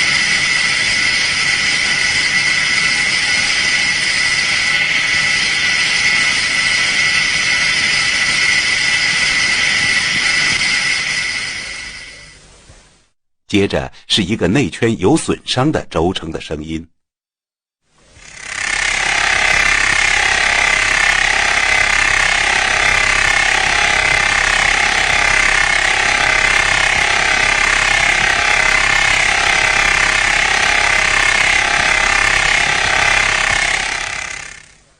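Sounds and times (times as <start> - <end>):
ball bearing rushing noise: 18.1 - 34.9.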